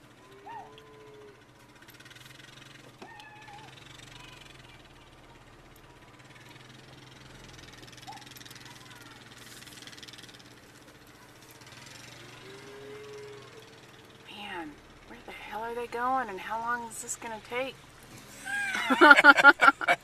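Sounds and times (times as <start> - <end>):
calves bawling: 0.0 - 4.8, 12.2 - 14.6
vehicle engine idling: 0.0 - 20.0.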